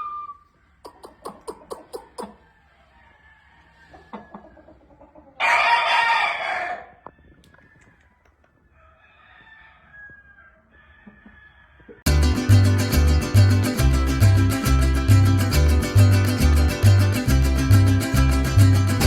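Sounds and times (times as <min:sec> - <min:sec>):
rooster crowing: 0:02.3 - 0:04.6, 0:05.4 - 0:08.2, 0:08.8 - 0:12.0
guitar music: 0:12.1 - 0:19.0.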